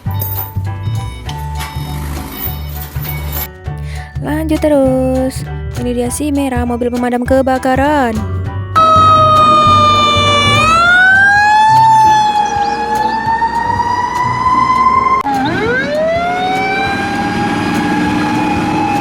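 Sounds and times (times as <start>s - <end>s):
fire engine siren wailing: 8.8s - 19.0s.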